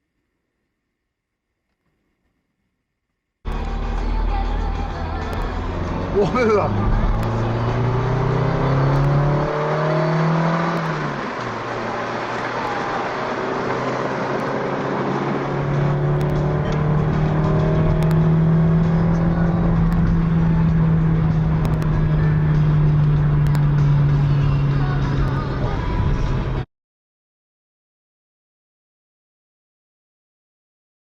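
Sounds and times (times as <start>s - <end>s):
car engine running: 3.5s - 26.6s.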